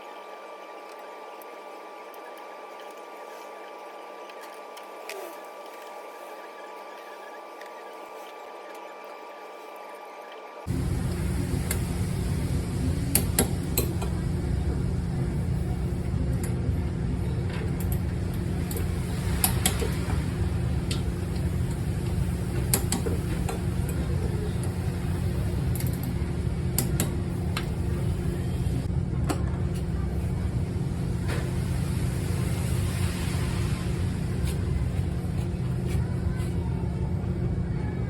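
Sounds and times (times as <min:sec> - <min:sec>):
car road noise drone: 0:10.7 - 0:16.3.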